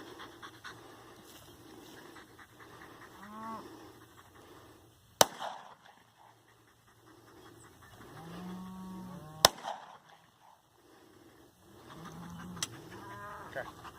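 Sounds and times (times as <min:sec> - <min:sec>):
gunshot: 0:05.2 - 0:05.8, 0:09.4 - 0:10.0.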